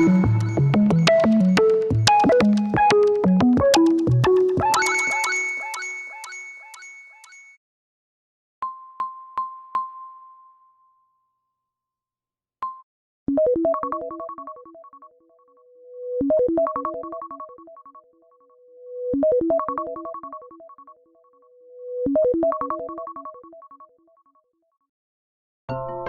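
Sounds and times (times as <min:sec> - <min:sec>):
synthesized keyboard ringtone melody: 0:00.0 - 0:07.4.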